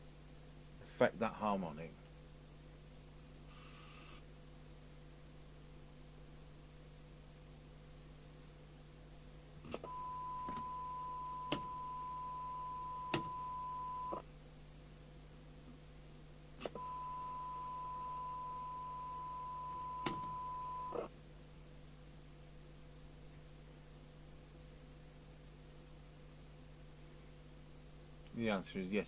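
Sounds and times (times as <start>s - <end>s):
faint equipment hum: 0.0s - 29.0s
steady test tone: 9.8s - 14.2s, 16.8s - 21.1s.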